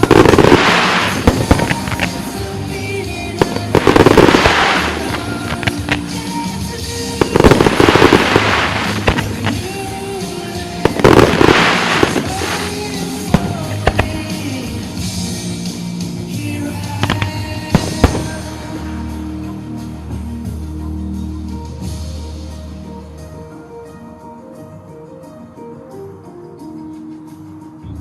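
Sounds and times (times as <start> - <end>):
fireworks crackling bursts: 0.0 - 19.2
music playing: 0.0 - 28.0.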